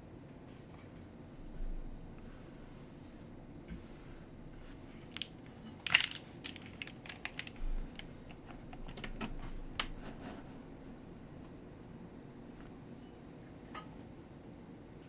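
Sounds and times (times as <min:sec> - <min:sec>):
mechanical keyboard clacks: 0:05.1 - 0:10.2.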